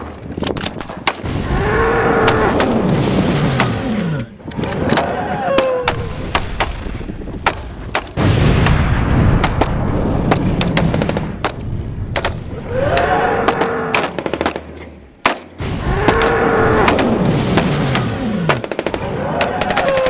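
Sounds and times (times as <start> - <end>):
dense rumble: 0.0 - 19.7
rapid gunfire: 0.8 - 5.0, 5.7 - 20.0.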